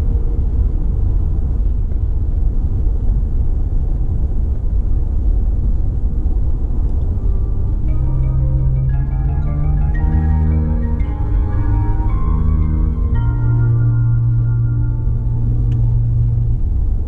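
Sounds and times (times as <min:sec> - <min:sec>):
car driving on road: 0:00.0 - 0:17.0
faint instrumental music: 0:06.7 - 0:17.0.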